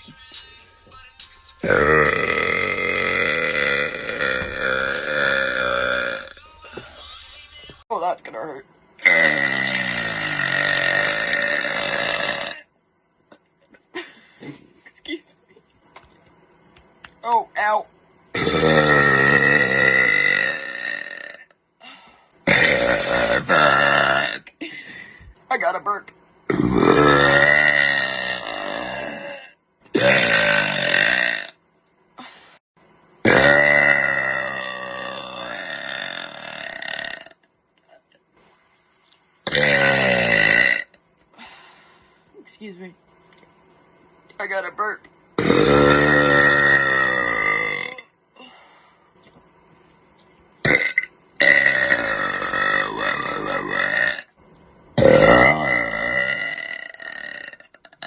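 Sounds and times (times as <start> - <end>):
person burping loudly: 1.6 - 7.0, 9.0 - 12.7, 18.3 - 21.6, 22.4 - 24.7, 26.5 - 31.6, 33.2 - 38.1, 39.4 - 41.0, 45.4 - 48.2, 50.6 - 54.3, 55.0 - 58.0.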